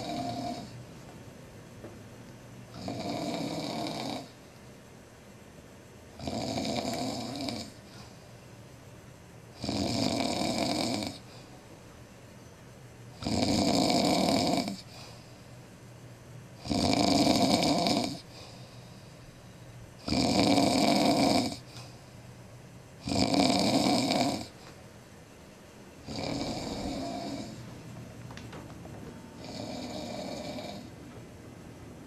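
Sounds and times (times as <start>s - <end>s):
man snoring loudly: 0.0s - 0.8s, 2.7s - 4.3s, 6.2s - 7.8s, 9.6s - 11.2s, 13.2s - 15.1s, 16.6s - 18.2s, 20.0s - 21.6s, 23.0s - 24.5s, 26.0s - 27.6s, 29.4s - 30.9s.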